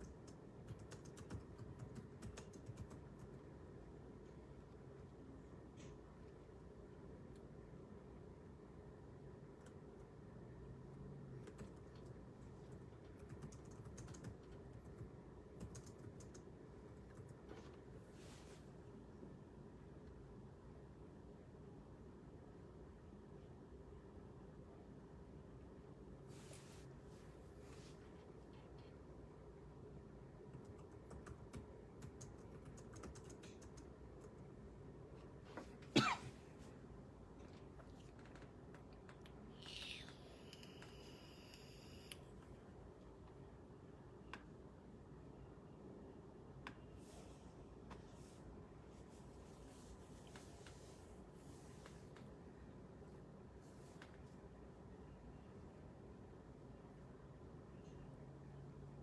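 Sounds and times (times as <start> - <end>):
faint keyboard typing: 0.0 - 3.6, 9.4 - 10.3, 11.2 - 18.0, 30.3 - 34.6, 37.4 - 42.5.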